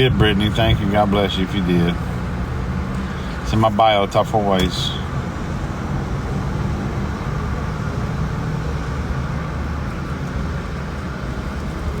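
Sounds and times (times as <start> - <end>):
steady low rumble: 0.0 - 6.4.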